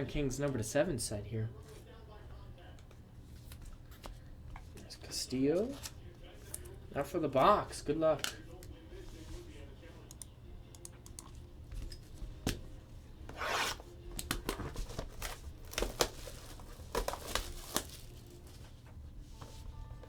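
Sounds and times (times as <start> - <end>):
plastic wrap tearing and crinkling: 13.4 - 18.6.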